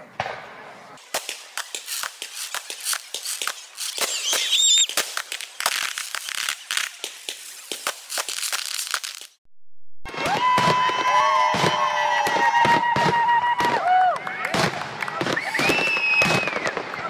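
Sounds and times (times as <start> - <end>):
fireworks crackling: 0.2 - 9.4, 10.1 - 17.0
high firework whistle: 2.6 - 9.3, 15.3 - 16.8.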